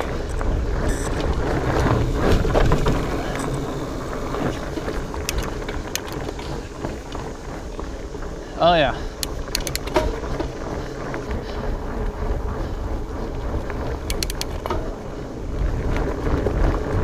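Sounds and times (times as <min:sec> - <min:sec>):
bike rolling over rough trail: 0:00.0 - 0:17.0
clicks and rattles: 0:04.5 - 0:06.7, 0:09.2 - 0:10.6, 0:14.0 - 0:14.9.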